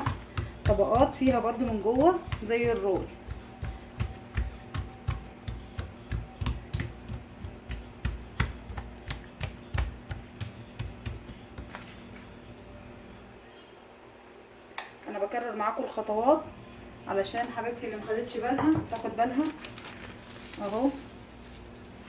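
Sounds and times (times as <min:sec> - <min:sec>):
hands patting pastry dough: 0:00.0 - 0:12.5.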